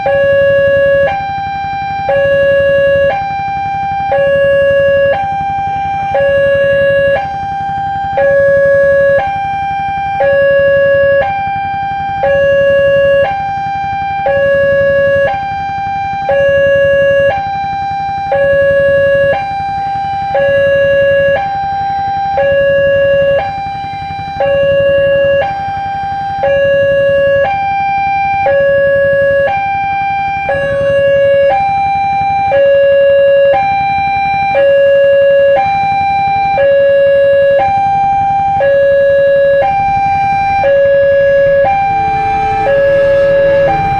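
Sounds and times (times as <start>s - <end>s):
two-tone warning siren: 0.0s - 43.9s
low rumble: 37.9s - 43.9s.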